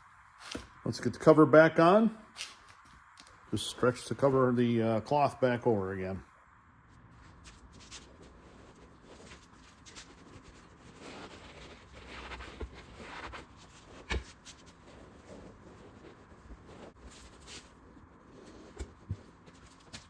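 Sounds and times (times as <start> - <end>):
fabric rustling and scraping: 6.8 - 20.0.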